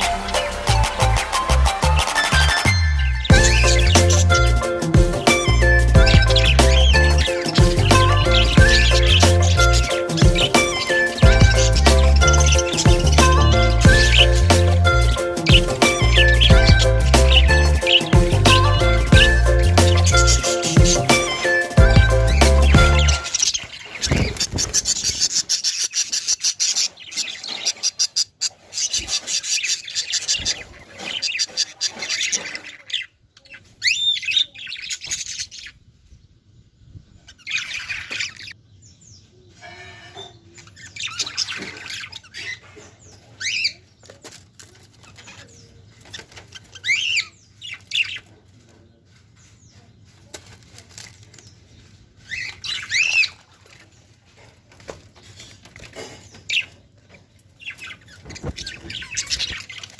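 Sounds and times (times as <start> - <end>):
parrot calls: 0.0 - 35.8
parrot wings fluttering: 22.9 - 25.5, 58.1 - 59.9.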